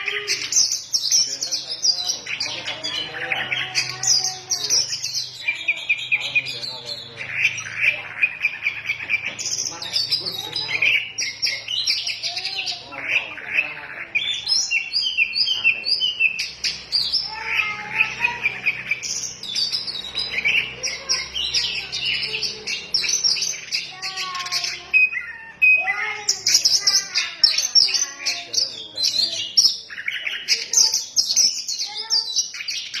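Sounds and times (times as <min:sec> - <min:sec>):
songbird singing: 0:00.0 - 0:33.0.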